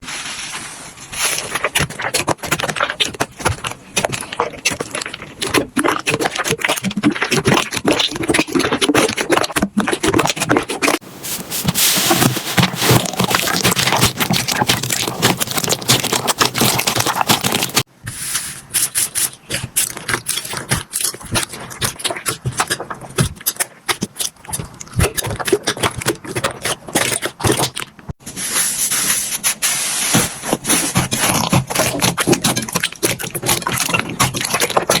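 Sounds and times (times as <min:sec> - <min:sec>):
slime squished by hand: 0:01.2 - 0:28.0.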